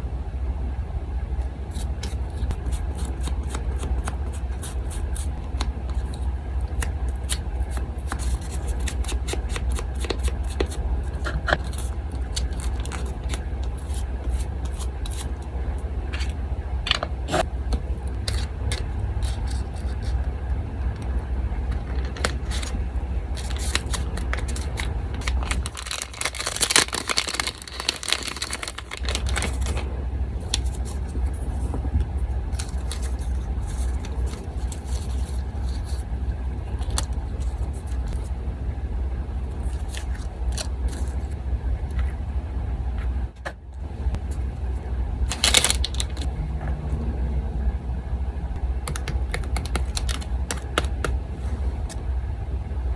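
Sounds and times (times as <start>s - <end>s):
electric fan hum: 0.0s - 52.9s
scissors snipping paper: 1.7s - 15.4s, 23.4s - 29.8s, 32.6s - 36.0s, 45.3s - 46.3s, 48.9s - 51.1s
paper rustling: 22.0s - 29.8s, 32.6s - 36.0s, 45.3s - 46.3s.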